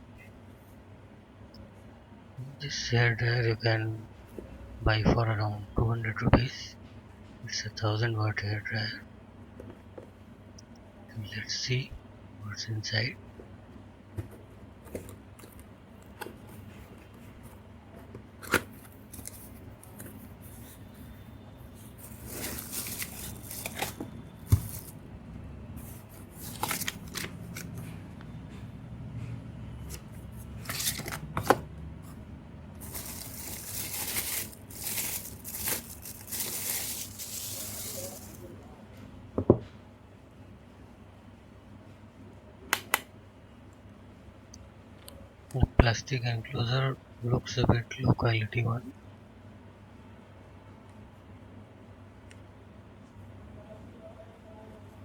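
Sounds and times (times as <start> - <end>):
plastic scraping and rustling: 21.8 - 25.0, 25.8 - 27.9, 29.8 - 31.6, 32.8 - 38.5.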